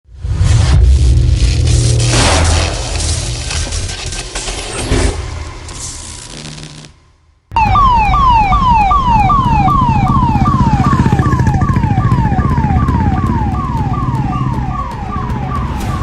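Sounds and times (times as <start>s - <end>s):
police siren wailing: 7.5s - 16.0s.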